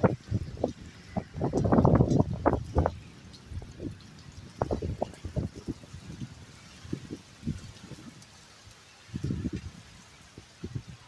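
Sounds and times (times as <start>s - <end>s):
wind gusts buffeting microphone: 0.0s - 11.0s.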